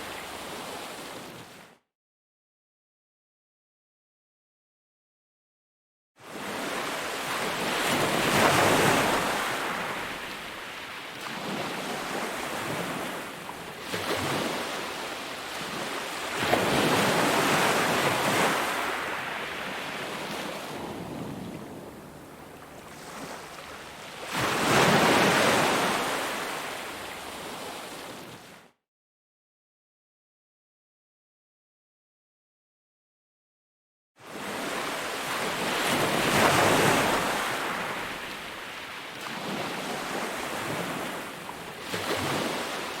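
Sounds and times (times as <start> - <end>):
ocean waves breaking: 6.3 - 28.5, 34.2 - 43.0.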